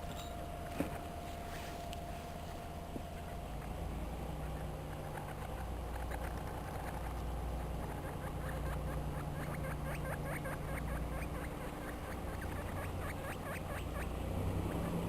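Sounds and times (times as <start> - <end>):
steady low hum: 0.0 - 15.0
guinea pigs squeaking: 3.0 - 15.0.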